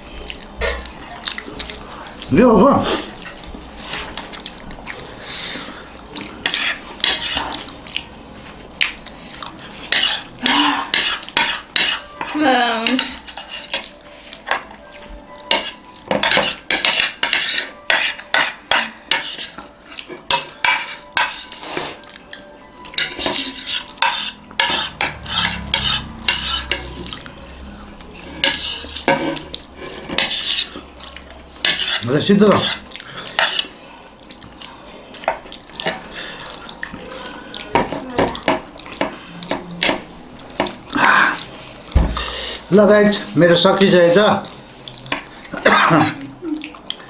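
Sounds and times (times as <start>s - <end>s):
spoons clinking against plates: 6.3s - 8.1s, 9.8s - 27.5s, 28.3s - 33.7s.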